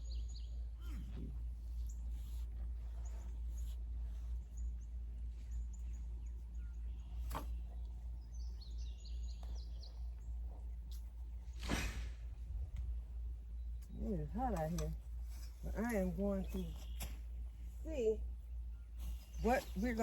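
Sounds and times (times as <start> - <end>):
birds chirping faintly: 0.0 - 20.0
steady low rumble: 0.0 - 20.0
sharp rustling or scraping: 11.4 - 13.0.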